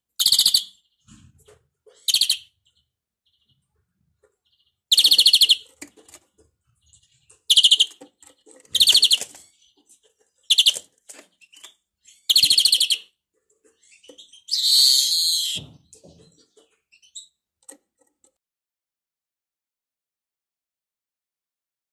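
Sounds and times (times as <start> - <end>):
finch harsh wheeze: 14.6 - 15.6.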